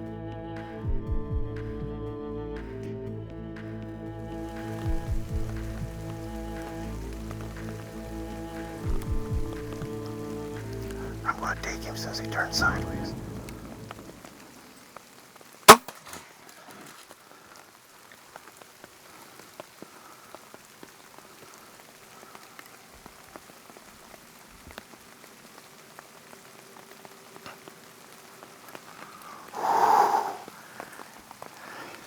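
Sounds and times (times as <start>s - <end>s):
rain pattering: 0.0s - 32.0s
crossbow snap: 15.7s - 16.2s.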